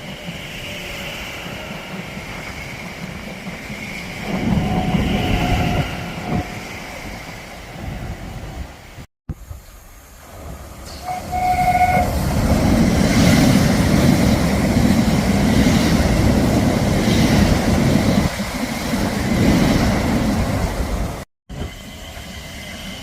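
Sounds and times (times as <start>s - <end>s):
train wheels rumbling on rails: 0.0s - 23.0s
train horn blast: 4.3s - 6.6s, 10.9s - 12.2s.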